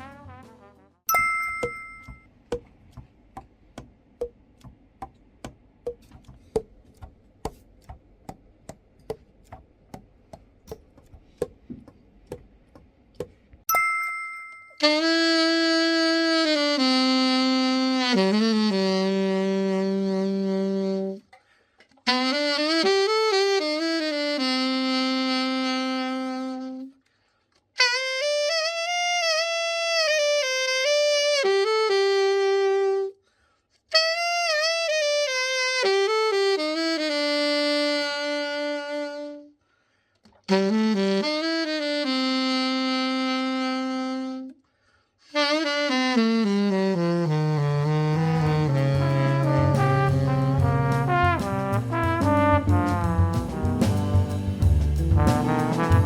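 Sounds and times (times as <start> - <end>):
alto saxophone long notes: 14.8 - 21.4, 22.1 - 27.0, 27.8 - 33.2, 33.9 - 39.6, 40.5 - 44.6, 45.2 - 56.0.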